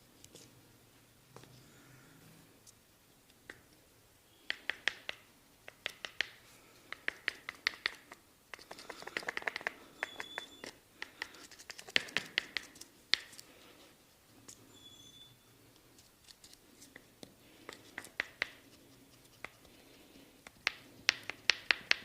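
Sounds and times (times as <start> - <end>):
sharp snapping clicks: 4.5 - 13.4
hands rubbing skin and hair: 4.5 - 14.6, 15.8 - 22.0.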